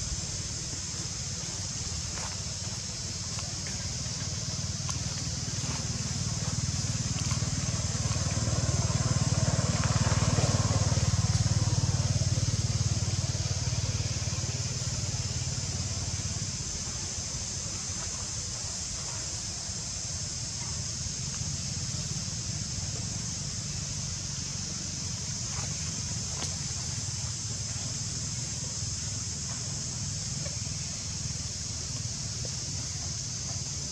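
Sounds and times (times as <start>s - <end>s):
steady high hiss: 0.0s - 33.9s
vehicle engine rumble passing: 4.4s - 16.6s.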